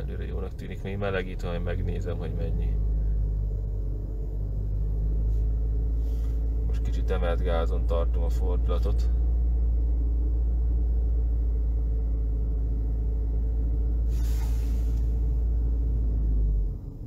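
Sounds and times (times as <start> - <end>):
car engine idling: 0.0 - 17.0
brief hiss: 14.1 - 15.2.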